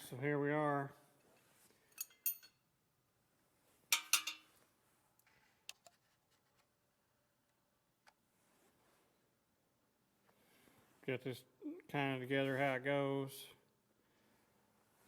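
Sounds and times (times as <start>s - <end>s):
metal parts clinking: 2.0s - 2.6s, 4.0s - 4.5s.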